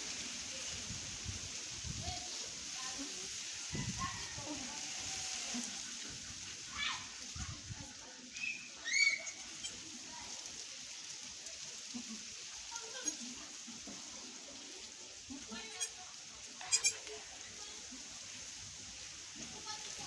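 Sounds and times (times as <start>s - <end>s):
steady high hiss: 0.0s - 15.4s.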